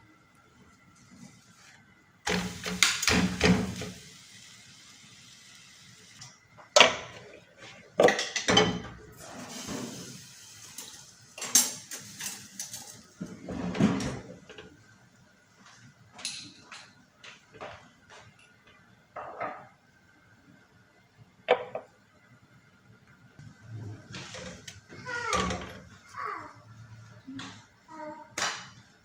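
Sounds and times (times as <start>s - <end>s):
dishes and utensils clattering: 8.0s - 10.1s, 11.4s - 14.6s.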